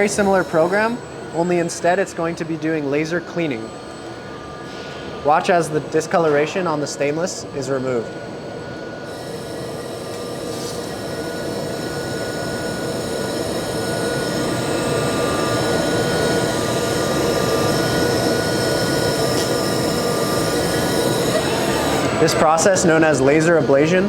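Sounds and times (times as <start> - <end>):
laser cleaning hiss: 0.0 - 1.0, 9.1 - 23.2
thin high whine: 0.0 - 24.0.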